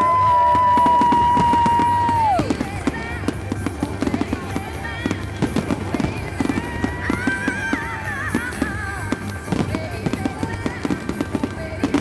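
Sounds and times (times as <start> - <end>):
fireworks popping and crackling: 0.0 - 12.0
music playing: 0.0 - 12.0.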